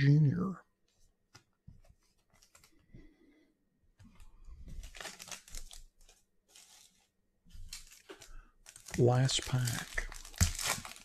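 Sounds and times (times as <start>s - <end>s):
plastic wrapper crinkling and tearing: 4.6s - 11.0s.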